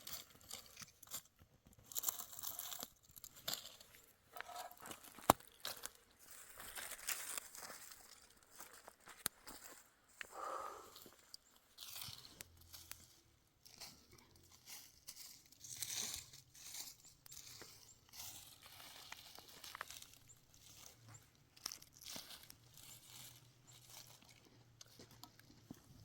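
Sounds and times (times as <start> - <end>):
crunching and rustling: 0.0 - 9.8, 11.0 - 26.0.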